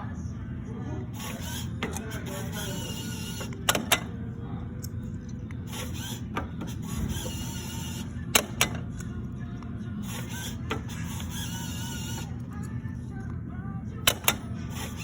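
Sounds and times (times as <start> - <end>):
vending machine humming: 0.0 - 15.0
sharp machine clicks: 1.2 - 4.1, 5.7 - 8.9, 14.1 - 15.0.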